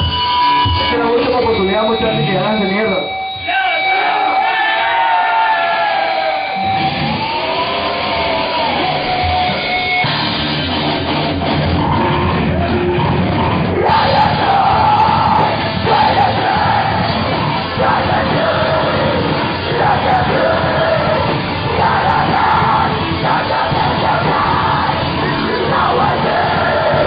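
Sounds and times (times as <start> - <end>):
heavy metal band playing: 0.0 - 27.0.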